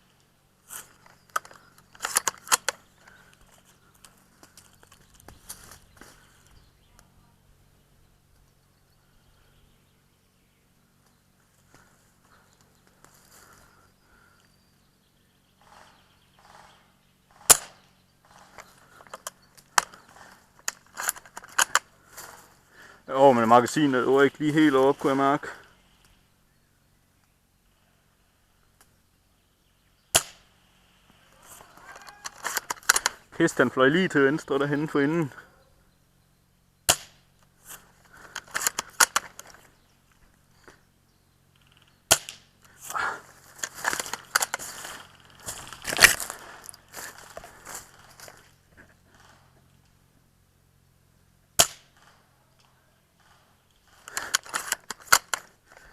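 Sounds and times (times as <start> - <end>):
handling and rustling: 0.6 - 6.3, 42.7 - 49.3
metallic clicks of rifle bolt: 0.7 - 2.8, 20.6 - 21.9, 38.3 - 39.6, 54.1 - 55.5
airsoft rifle shot: 17.4 - 17.9, 30.1 - 30.5, 36.9 - 37.2, 42.1 - 42.5, 51.6 - 52.2.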